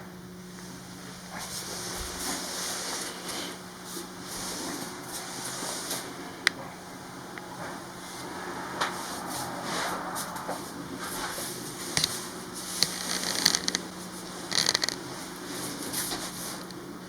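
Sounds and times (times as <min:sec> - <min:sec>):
rustles and scrapes: 0:07.5 - 0:16.8.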